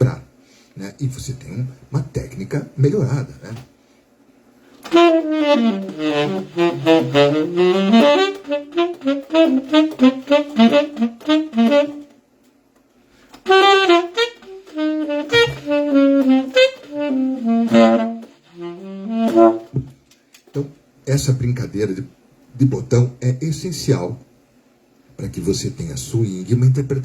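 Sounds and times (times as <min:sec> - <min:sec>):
saxophone playing short notes: 0:04.8 - 0:12.1, 0:13.4 - 0:19.9.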